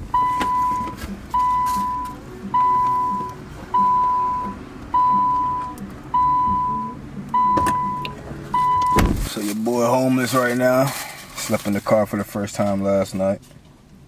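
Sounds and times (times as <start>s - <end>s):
car warning chime dinging: 0.0s - 9.2s.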